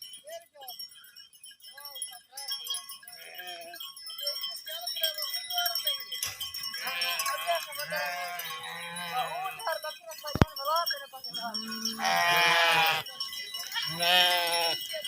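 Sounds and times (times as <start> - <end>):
animal bells jingling: 0.0 - 15.0
sheep and goats bleating: 2.4 - 4.0, 6.2 - 15.0.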